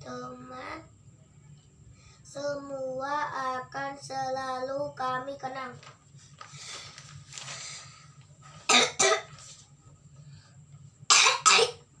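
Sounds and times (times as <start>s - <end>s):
child breathing: 6.4s - 8.2s
child coughing: 8.7s - 9.3s, 11.1s - 11.8s.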